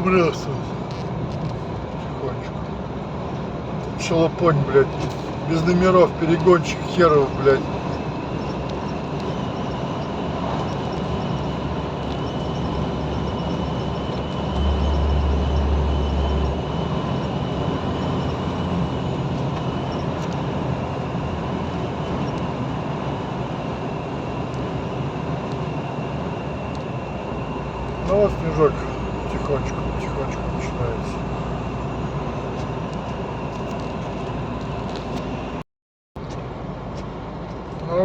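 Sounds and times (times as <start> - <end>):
engine and tyre drone in cab: 0.0 - 35.6
deep low rumble: 7.3 - 22.8.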